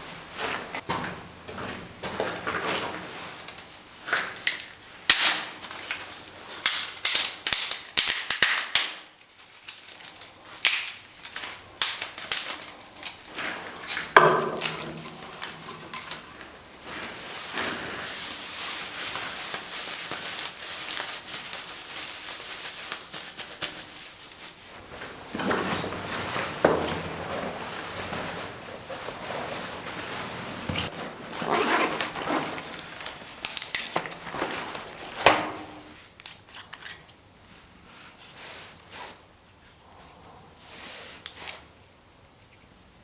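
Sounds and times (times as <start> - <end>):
sharp cracks and knocks: 4.2 - 13.3
rustling hiss: 15.0 - 31.2.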